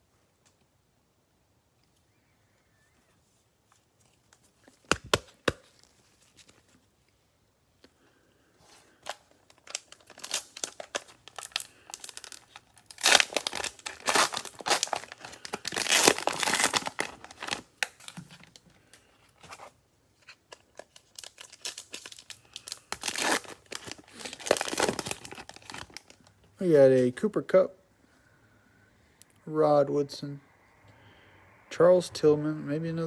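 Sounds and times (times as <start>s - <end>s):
plastic wrapper crinkling: 8.9s - 26.4s.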